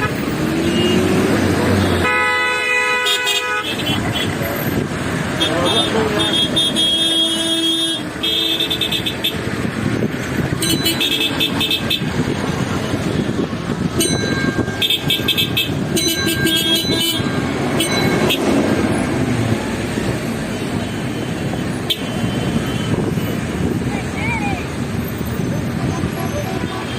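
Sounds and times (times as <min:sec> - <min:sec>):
car horns honking: 0:00.0 - 0:09.8, 0:10.4 - 0:19.2, 0:20.5 - 0:23.8, 0:25.1 - 0:26.9
road traffic engines: 0:00.0 - 0:26.9.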